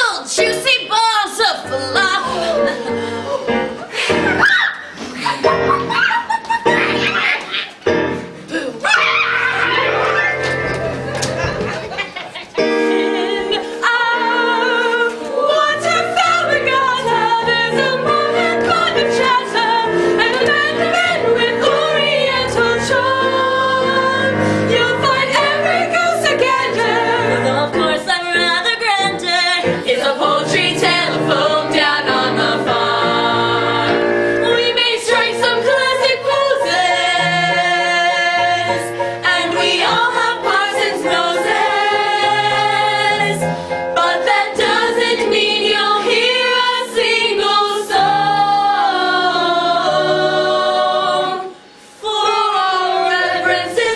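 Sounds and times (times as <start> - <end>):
ensemble singing with accompaniment: 12.6 - 53.9.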